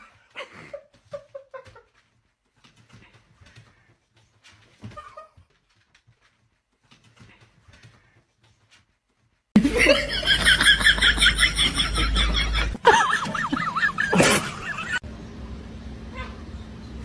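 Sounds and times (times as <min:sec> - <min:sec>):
high-pitched laughing: 0:09.6 - 0:15.0.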